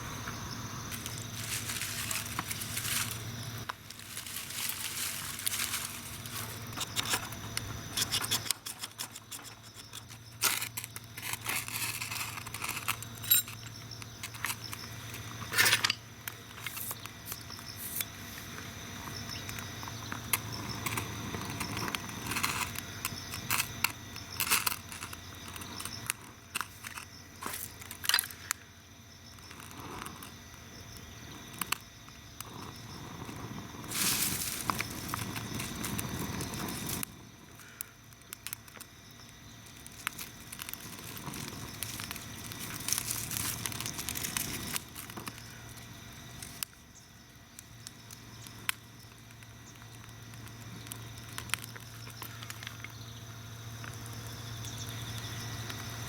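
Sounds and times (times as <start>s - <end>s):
campfire crackling: 0.0s - 56.0s
rushing hiss of fire: 32.3s - 46.7s.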